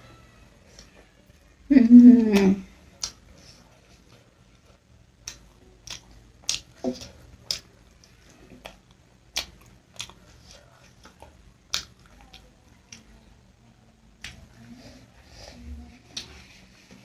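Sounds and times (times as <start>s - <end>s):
quiet chewing: 2.2s - 17.0s
wet mouth clicks: 5.2s - 7.7s, 8.6s - 10.2s, 11.0s - 13.0s.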